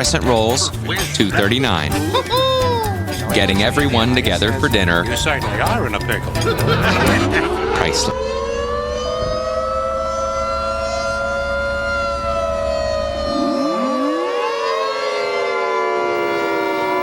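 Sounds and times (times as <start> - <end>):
warning sirens wailing: 3.0 - 17.0
low rumble: 3.3 - 13.3.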